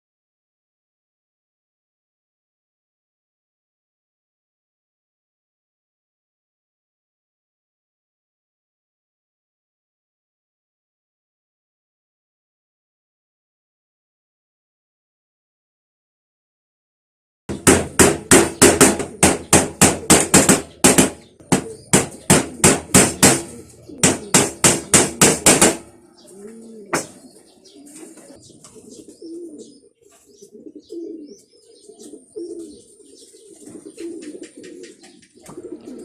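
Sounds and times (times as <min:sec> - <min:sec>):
knock: 0:17.5 - 0:25.9, 0:26.9 - 0:27.2
rapid hammer blows: 0:17.5 - 0:25.9, 0:26.9 - 0:27.2
pigeons cooing: 0:17.5 - 0:36.0.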